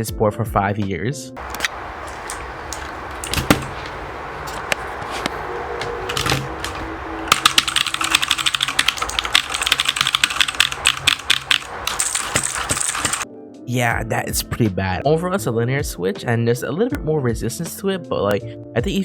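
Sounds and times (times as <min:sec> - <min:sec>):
mechanical keyboard typing: 0:05.7 - 0:13.2.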